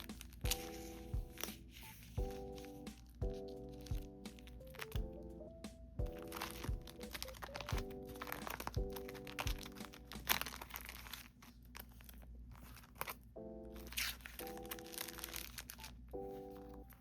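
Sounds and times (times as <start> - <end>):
plastic sheets crinkling: 0.0 - 5.0, 6.2 - 17.0
background music with steady beat: 0.0 - 10.6.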